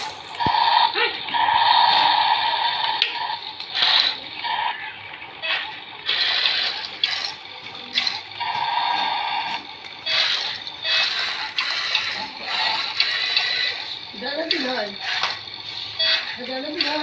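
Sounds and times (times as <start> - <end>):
toy motor and gears whirring: 0.0 - 17.0.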